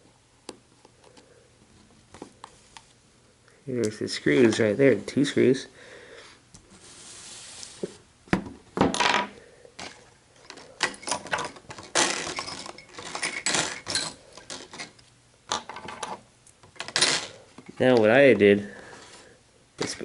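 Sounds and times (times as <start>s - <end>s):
small metal tools clinking: 10.8s - 15.0s.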